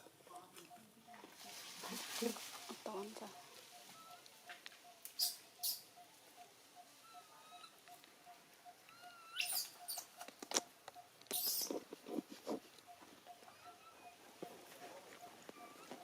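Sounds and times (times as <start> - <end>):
faint steady ticking: 2.6 - 16.0
baby monkey squealing: 5.2 - 6.0, 8.9 - 10.1, 11.3 - 11.8.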